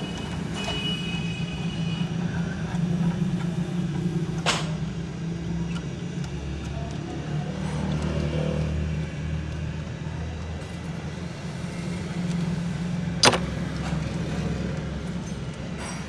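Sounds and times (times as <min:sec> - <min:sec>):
metallic clink of hand tool: 0:13.2 - 0:13.5.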